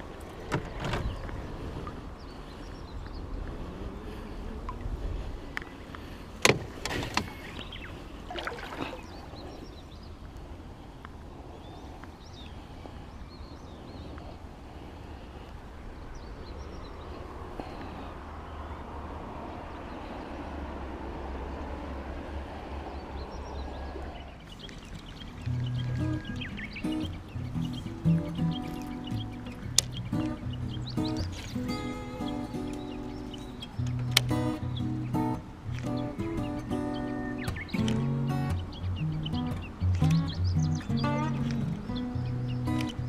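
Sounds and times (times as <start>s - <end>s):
water sloshing and trickling: 4.2s - 11.3s, 22.8s - 38.3s.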